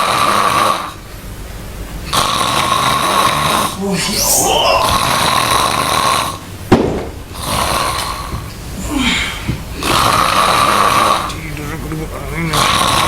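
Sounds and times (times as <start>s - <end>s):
person snoring: 3.5s - 5.4s.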